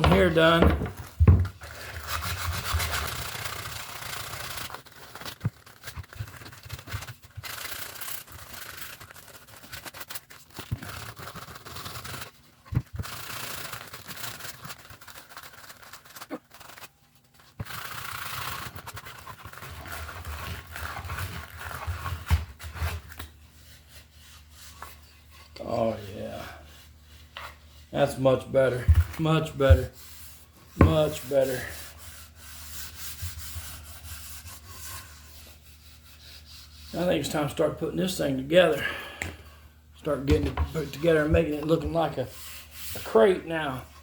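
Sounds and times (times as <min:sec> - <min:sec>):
knocks of wood: 0:00.0 - 0:01.6
sandpaper rubbing on wood: 0:01.9 - 0:04.9, 0:23.5 - 0:28.5, 0:29.2 - 0:38.2, 0:40.7 - 0:44.0.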